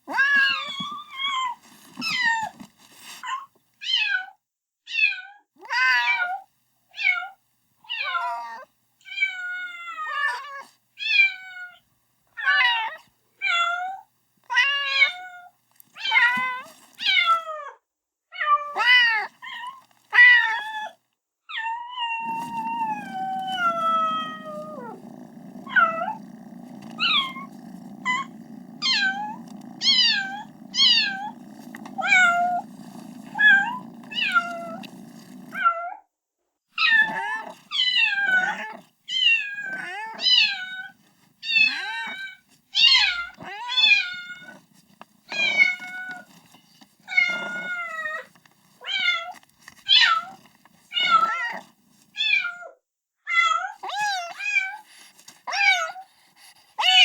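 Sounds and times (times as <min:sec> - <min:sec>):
kitten meowing: 0:22.2 - 0:35.6.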